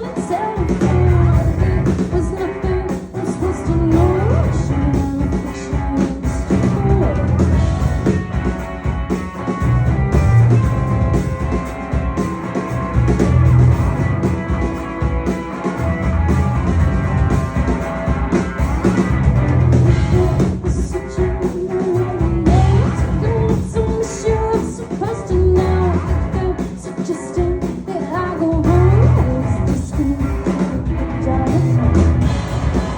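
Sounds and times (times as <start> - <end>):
person singing: 0.0 - 7.8, 19.9 - 32.2
live rock band playing: 0.0 - 32.9.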